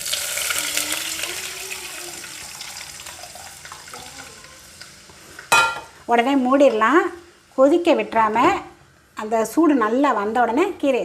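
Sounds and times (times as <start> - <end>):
liquid hissing in hot oil: 0.0 - 5.5.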